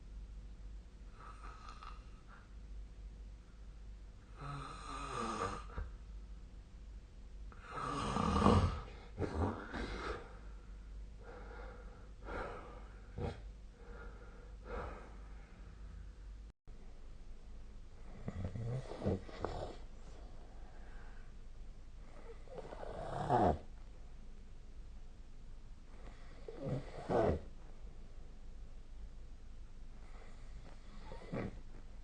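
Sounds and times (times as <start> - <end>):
person snoring: 4.3 - 5.9, 7.6 - 10.4, 18.1 - 19.8, 22.2 - 23.7, 26.1 - 27.5, 30.2 - 31.6
short snorts: 13.1 - 13.5, 18.2 - 19.9, 26.0 - 27.5, 30.1 - 31.6.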